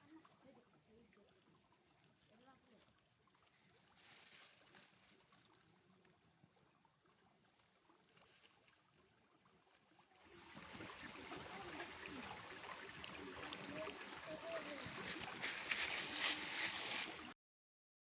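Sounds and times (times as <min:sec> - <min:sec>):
moving water splashing: 0:10.2 - 0:17.3.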